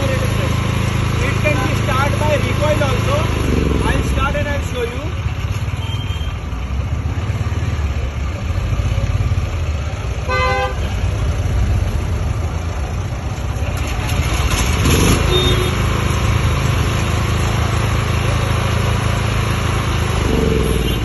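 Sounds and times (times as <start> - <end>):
vehicle horn toot: 5.7 - 6.4, 10.3 - 10.8, 15.2 - 15.8.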